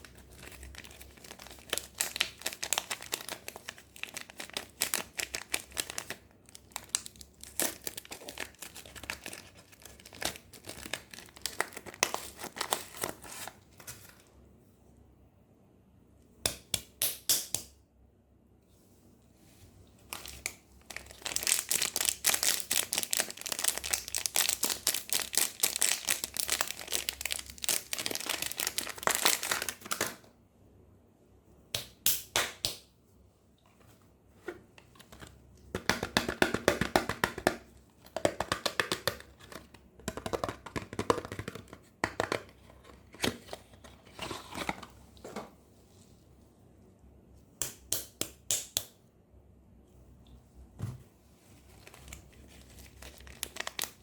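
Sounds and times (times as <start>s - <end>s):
packaging crinkling and tearing: 0.0s - 14.3s, 20.1s - 30.2s, 51.6s - 54.0s.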